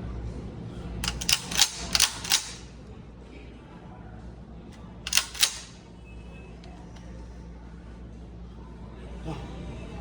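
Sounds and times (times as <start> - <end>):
shotgun action clicking: 1.0 - 2.7, 5.1 - 5.8.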